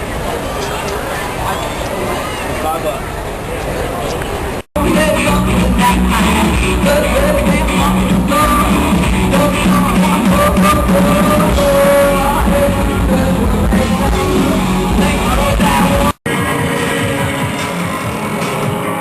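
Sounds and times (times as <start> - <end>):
live rock band with singer: 4.8 - 19.0.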